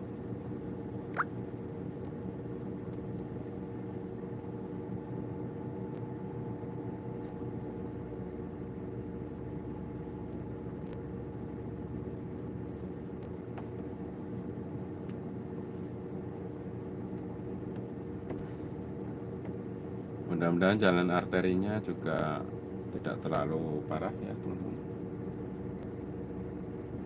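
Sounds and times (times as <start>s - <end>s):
vehicle engine and road hum: 0.0s - 27.0s.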